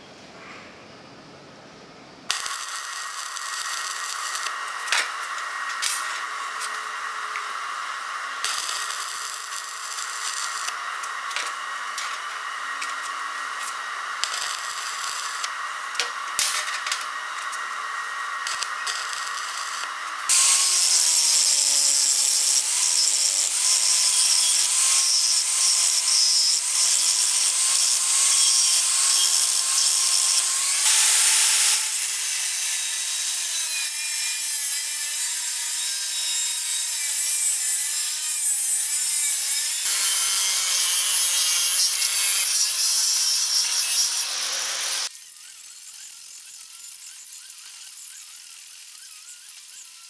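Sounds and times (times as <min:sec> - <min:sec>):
harsh hissing of material: 0:02.3 - 0:32.2, 0:44.0 - 0:45.1
power tool motor whine: 0:02.3 - 0:45.1.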